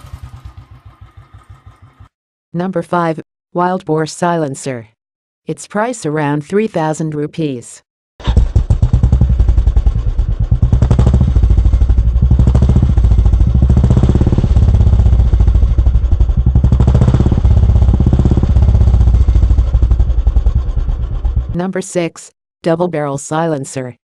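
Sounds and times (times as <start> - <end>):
motorcycle engine exhaust beat: 0.0 - 2.1, 8.2 - 21.6.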